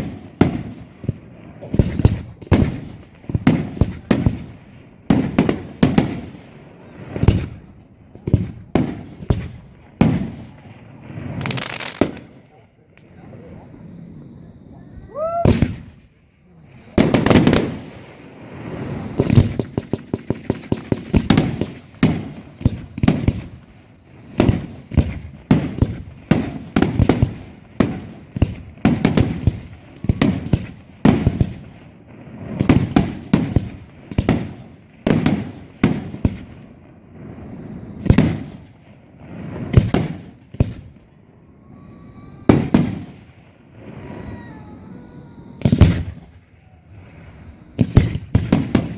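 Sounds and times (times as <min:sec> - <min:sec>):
firework bangs with echoes: 0:00.0 - 0:12.6, 0:13.4 - 0:48.9
firework whistle rising: 0:13.6 - 0:15.9, 0:41.4 - 0:43.2, 0:43.8 - 0:47.9.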